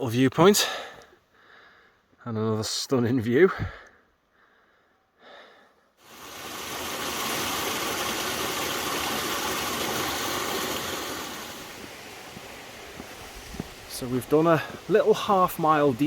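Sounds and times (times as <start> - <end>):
waterfall rushing: 6.0 - 16.0.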